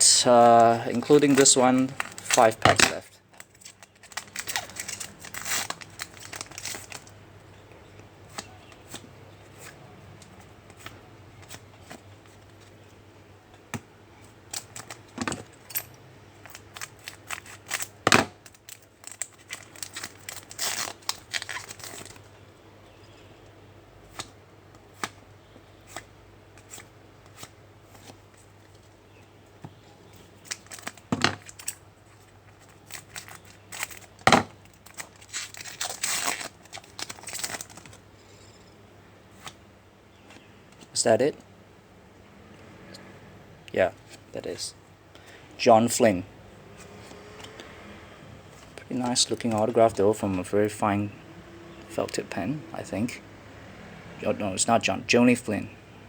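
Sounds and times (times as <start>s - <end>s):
card pack wrappers tearing: 0.1s - 7.1s, 16.5s - 22.2s, 30.4s - 31.7s, 32.6s - 38.0s.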